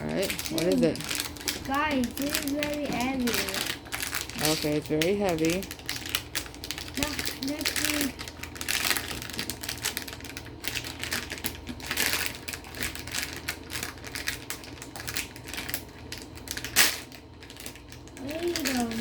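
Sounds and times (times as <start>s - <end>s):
toy packaging clicking and rustling: 0.0s - 19.0s.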